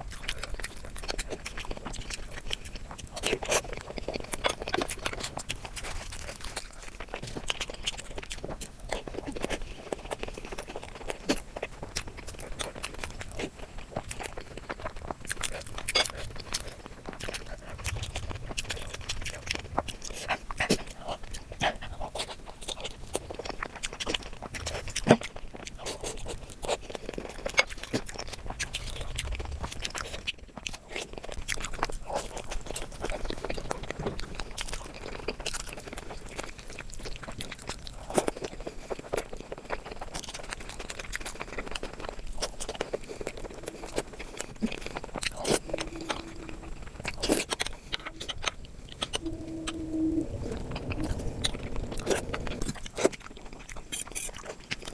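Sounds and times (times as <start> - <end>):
person chewing and crunching: 0.0 - 54.9.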